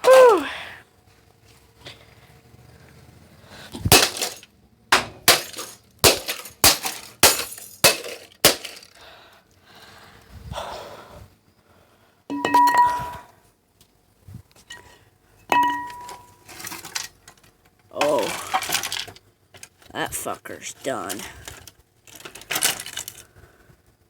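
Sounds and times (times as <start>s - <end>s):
broken pieces clattering: 3.8s - 9.0s, 15.5s - 19.7s, 21.1s - 23.2s
stick smashing plastic device: 3.8s - 9.0s.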